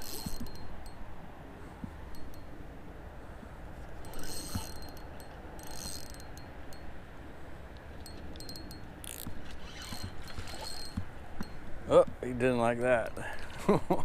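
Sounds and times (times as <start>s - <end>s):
fishing reel clicking: 4.1s - 5.0s, 5.6s - 6.3s, 8.1s - 11.0s.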